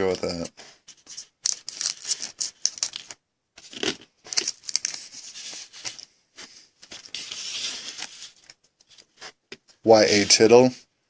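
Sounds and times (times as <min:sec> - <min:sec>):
wrapper tearing and crinkling: 0:01.4 - 0:06.0.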